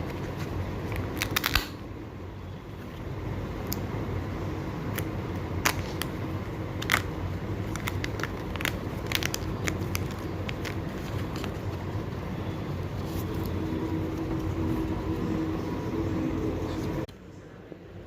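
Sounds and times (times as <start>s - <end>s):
steady low hum: 0.0s - 18.0s
plastic packaging clicks and crackles: 6.8s - 11.7s.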